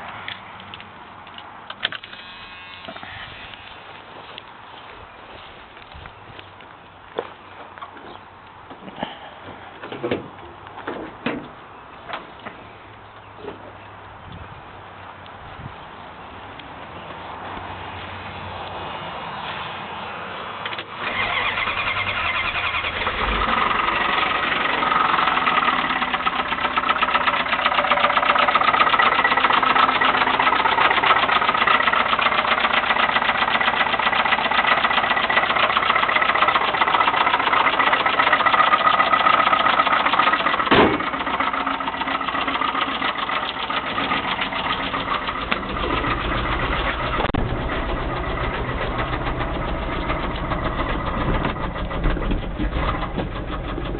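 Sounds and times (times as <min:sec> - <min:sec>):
truck engine starting: 0:01.4 - 0:04.4, 0:20.6 - 0:53.9
engine running with knock: 0:22.9 - 0:53.9
sharp loud engine knock: 0:36.8 - 0:41.5, 0:42.8 - 0:53.9.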